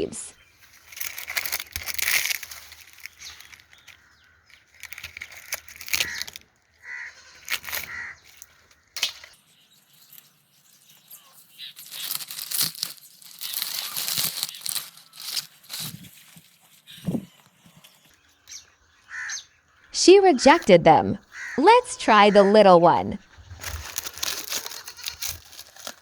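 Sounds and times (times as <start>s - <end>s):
dry leaves crackling and rustling: 0.4s - 18.1s, 23.5s - 26.0s.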